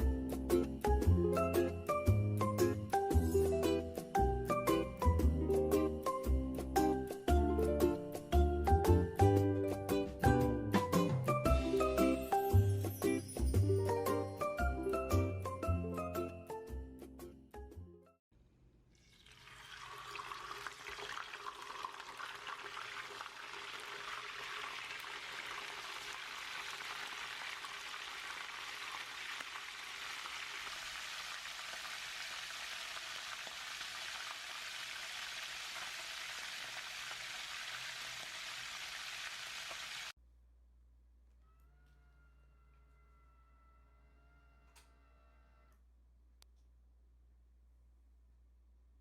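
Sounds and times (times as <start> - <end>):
food sizzling in a pan: 19.1 - 40.2.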